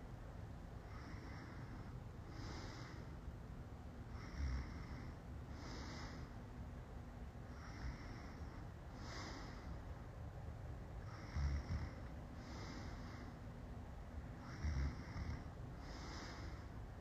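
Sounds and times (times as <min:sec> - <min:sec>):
woman snoring: 0:04.2 - 0:05.2, 0:11.1 - 0:12.9, 0:14.4 - 0:16.6.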